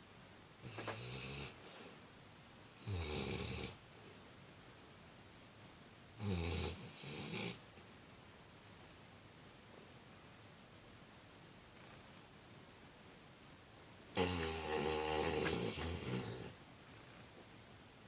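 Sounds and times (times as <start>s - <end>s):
dog snoring loudly: 0.6s - 1.6s, 2.8s - 3.8s, 6.2s - 7.6s, 14.1s - 16.6s.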